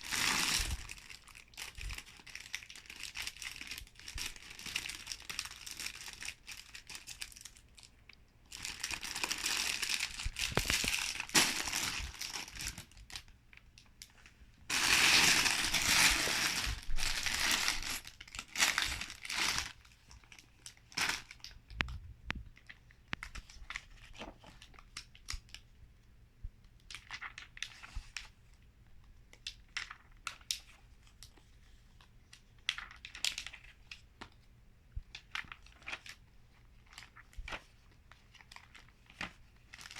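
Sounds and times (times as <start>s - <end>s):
plastic bags crinkling: 0.0s - 21.8s, 38.3s - 39.9s.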